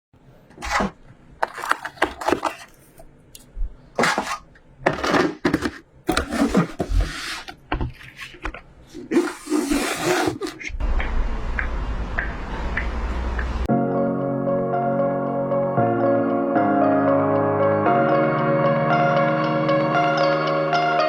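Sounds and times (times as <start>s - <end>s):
packaging rustling: 0.6s - 3.0s, 4.0s - 10.7s.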